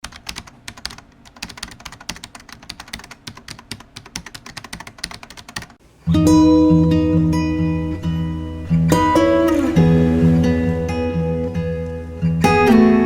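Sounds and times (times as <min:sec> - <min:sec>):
keyboard typing: 0:00.0 - 0:05.8
acoustic guitar music: 0:05.9 - 0:13.0.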